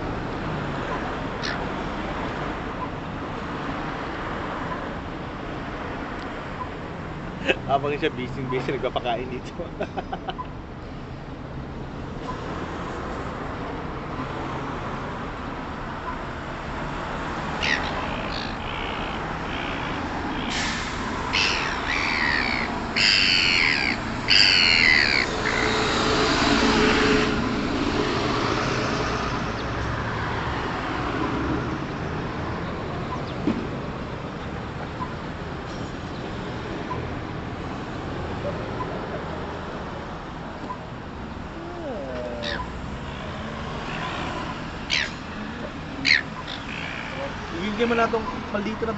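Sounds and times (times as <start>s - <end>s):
traffic rumble: 0.0s - 48.9s
seagulls calling harshly: 1.4s - 1.7s, 17.4s - 26.0s, 42.3s - 42.8s, 43.9s - 47.6s.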